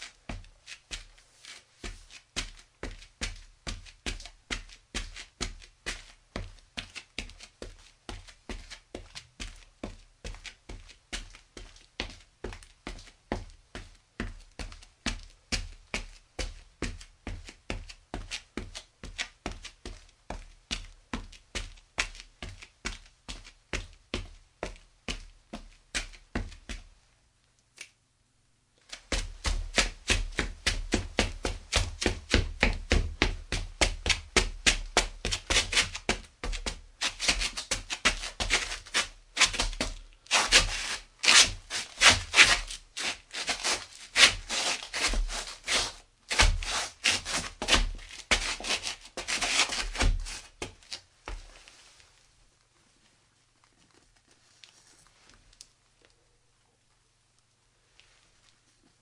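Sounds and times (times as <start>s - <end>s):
footsteps: 28.9s - 52.2s.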